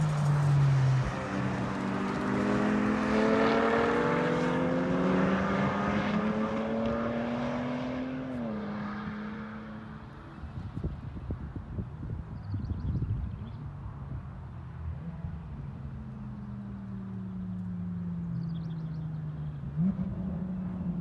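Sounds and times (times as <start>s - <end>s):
race car engine: 0.0s - 10.7s, 14.9s - 21.0s.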